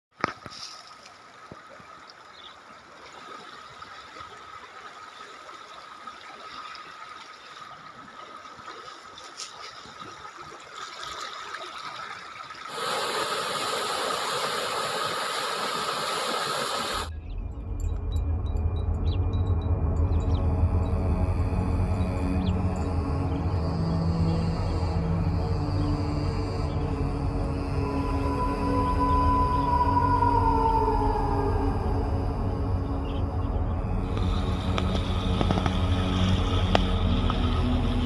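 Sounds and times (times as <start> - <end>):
deep low sound: 17.1 - 38.0
faint steady whine: 20.5 - 38.0
rain falling: 34.1 - 38.0.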